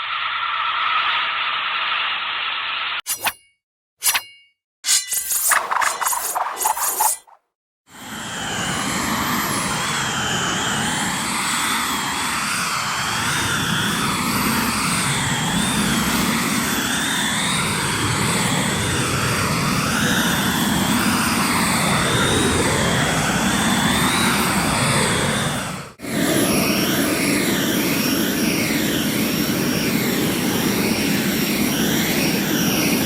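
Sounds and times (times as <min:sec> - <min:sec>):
swirling whoosh: 0:05.4 - 0:07.4.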